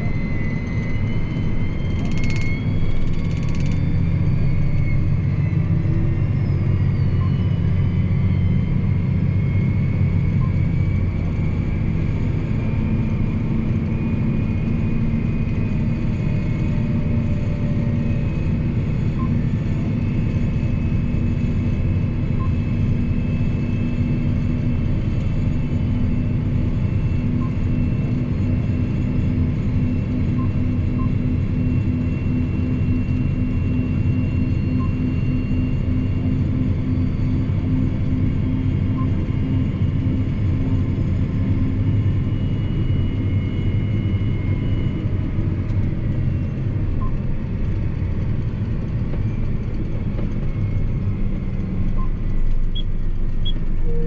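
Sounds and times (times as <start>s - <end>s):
tractor diesel engine running: 0.0s - 54.0s
faint high whine: 50.6s - 54.0s.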